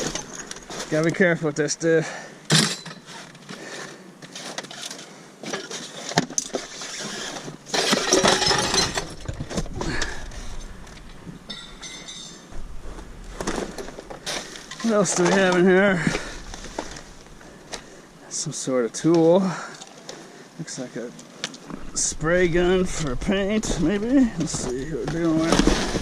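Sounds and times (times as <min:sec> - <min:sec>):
scrap pieces clinking and rattling: 0:04.3 - 0:09.4.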